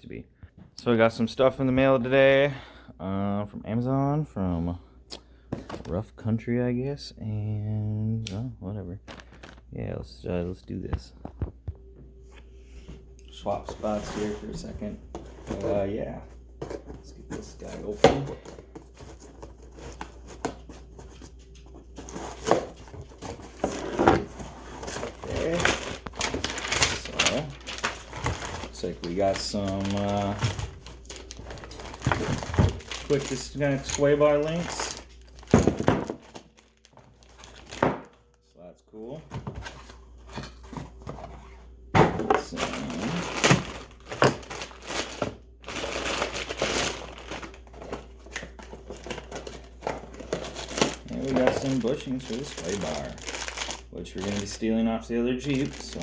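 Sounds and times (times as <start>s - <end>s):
packaging rustling and tearing: 16.7s - 38.2s, 42.2s - 56.0s.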